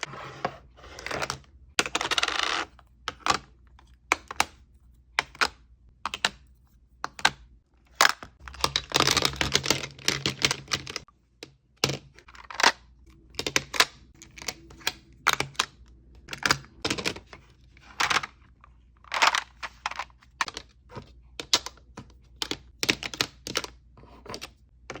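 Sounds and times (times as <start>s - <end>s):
cosmetic cases clicking and tapping: 8.0s - 11.0s.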